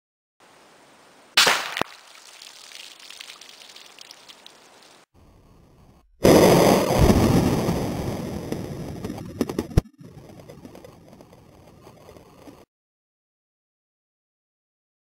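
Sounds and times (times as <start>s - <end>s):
air rifle firing: 1.4s - 1.9s.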